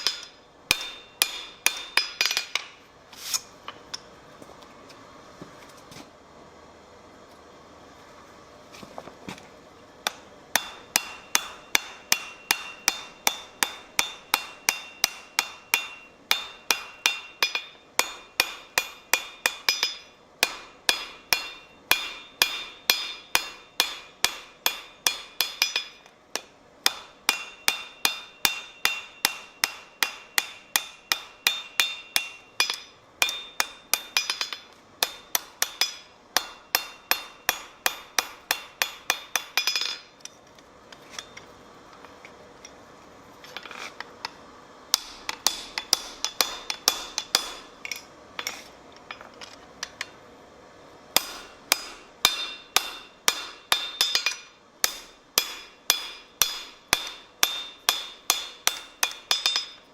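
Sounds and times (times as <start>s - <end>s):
anvil ringing: 0.0s - 2.4s, 10.6s - 26.0s, 26.9s - 40.1s, 51.2s - 59.8s
hammer forging on anvil: 0.0s - 2.8s, 10.1s - 40.3s, 44.9s - 49.2s, 51.1s - 59.9s.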